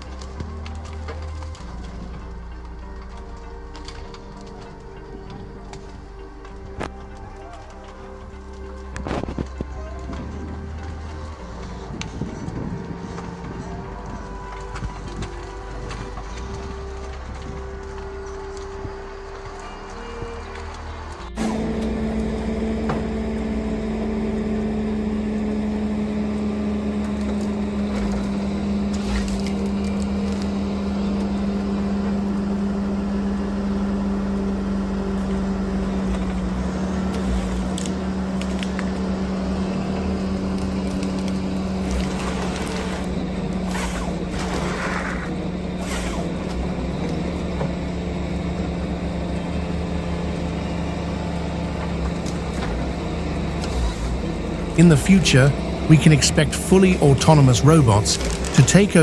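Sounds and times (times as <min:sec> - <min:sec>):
heavy machine engine running: 0:00.0 - 0:59.0.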